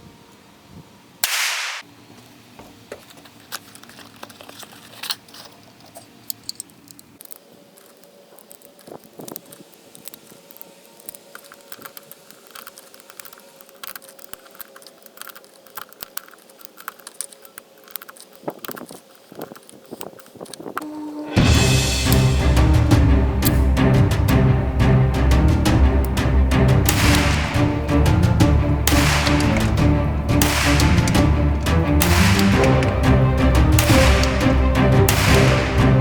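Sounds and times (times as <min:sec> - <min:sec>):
pistol shot with echo: 0:01.2 - 0:01.8, 0:26.9 - 0:36.0.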